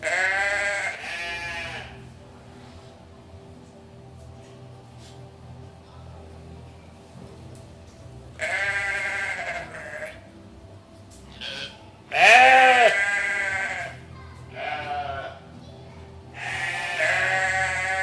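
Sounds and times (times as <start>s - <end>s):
goats bleating: 0.0s - 2.0s, 8.4s - 10.2s, 11.3s - 15.4s, 16.3s - 18.0s.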